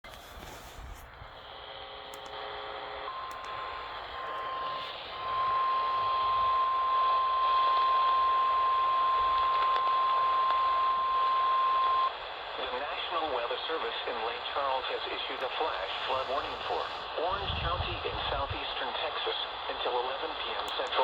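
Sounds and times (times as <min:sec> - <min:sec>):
radio static hiss: 0:00.4 - 0:08.2, 0:11.2 - 0:21.0
steady high alarm tone: 0:03.1 - 0:09.3.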